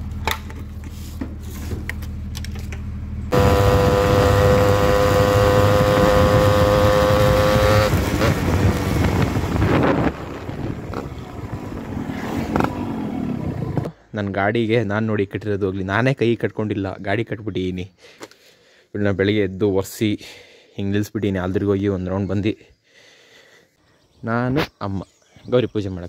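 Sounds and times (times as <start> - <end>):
motorcycle engine idling and revving: 0.0 - 13.9.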